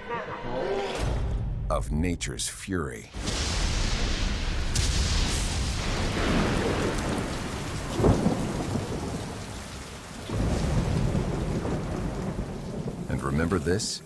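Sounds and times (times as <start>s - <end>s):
sharp thunder crack: 3.2s - 13.2s
thunder rumbling: 3.2s - 13.7s
heavy rain: 3.2s - 14.0s.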